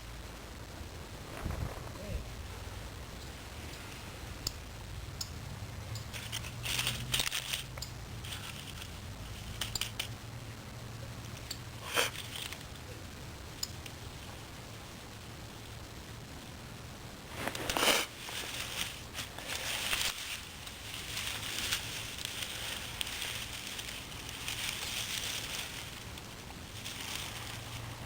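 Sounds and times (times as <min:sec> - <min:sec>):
short crackly bursts: 0:00.0 - 0:28.0
dry grass and leaves rustling: 0:00.6 - 0:28.0
small clicks: 0:09.6 - 0:10.2.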